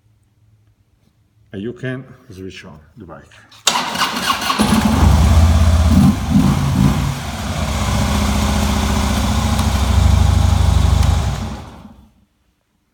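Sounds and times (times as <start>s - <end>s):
motorcycle engine idling: 4.6s - 12.0s.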